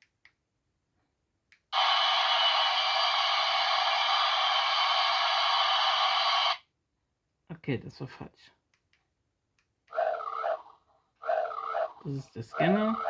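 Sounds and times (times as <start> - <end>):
static hiss from small speaker: 1.8 - 6.6.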